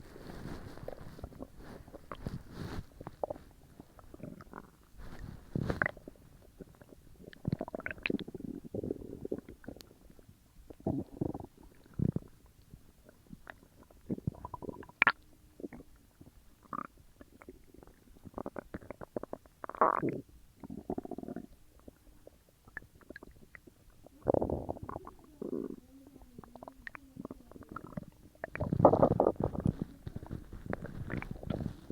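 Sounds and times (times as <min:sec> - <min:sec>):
stomach gurgling and rumbling: 0:00.0 - 0:31.9.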